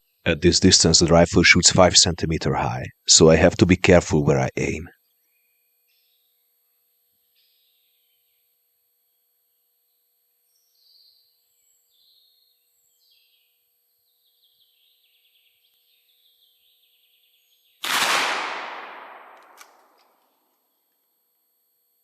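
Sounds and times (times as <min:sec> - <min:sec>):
small birds chirping: 0:10.5 - 0:17.8
rifle shot: 0:17.8 - 0:20.0.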